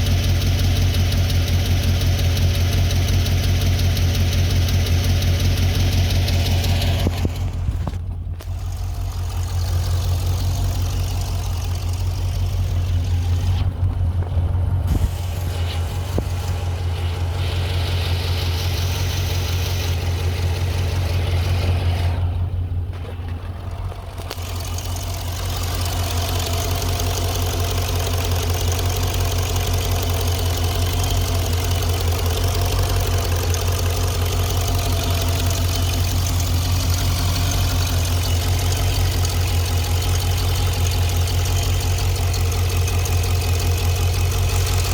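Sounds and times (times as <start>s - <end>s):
car engine idling with ticking: 0.0s - 44.9s.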